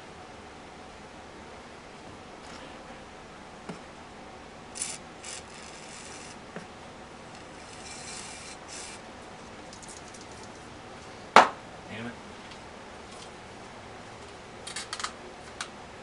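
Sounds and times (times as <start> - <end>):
tool rasping scrapes on metal: 4.8 - 6.4, 7.6 - 9.0.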